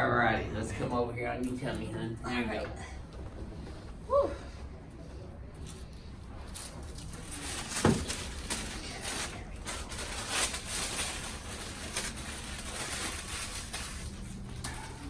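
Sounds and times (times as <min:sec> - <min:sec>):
clothing rustling on treatment table: 0:03.1 - 0:15.0.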